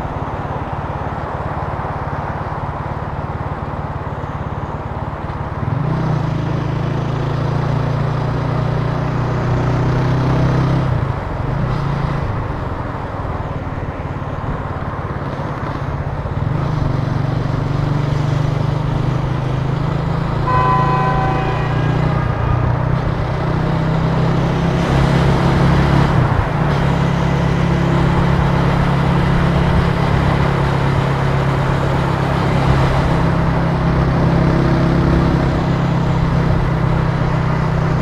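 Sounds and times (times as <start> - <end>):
motorcycle engine revving: 14.1 - 38.0
vehicle horn honking: 20.3 - 24.2.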